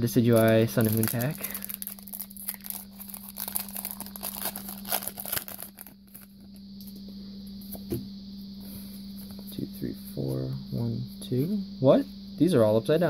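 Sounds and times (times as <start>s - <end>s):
wrapper tearing and crinkling: 0.3s - 6.3s.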